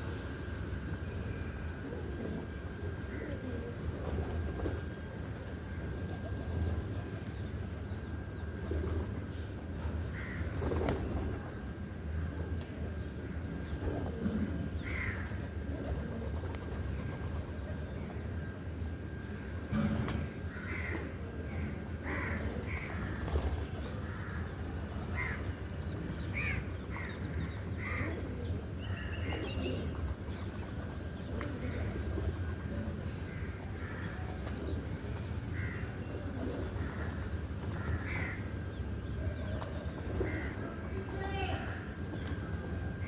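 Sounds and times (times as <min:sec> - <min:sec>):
steady low hum: 0:00.0 - 0:43.0
crows cawing: 0:10.1 - 0:10.8, 0:14.8 - 0:15.5, 0:19.7 - 0:25.6, 0:26.3 - 0:29.5, 0:33.2 - 0:34.4, 0:35.5 - 0:36.2, 0:36.8 - 0:38.7, 0:40.2 - 0:42.0.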